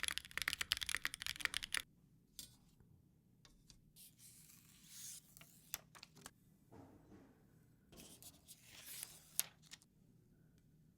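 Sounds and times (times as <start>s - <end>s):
mechanical keyboard typing: 0.0s - 1.8s.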